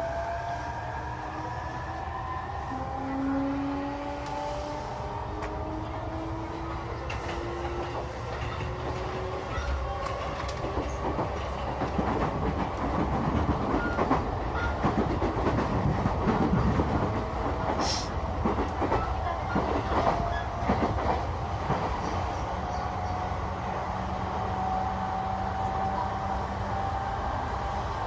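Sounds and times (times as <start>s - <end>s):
train rumble inside carriage: 0.0s - 28.0s
brief hiss: 17.8s - 18.1s.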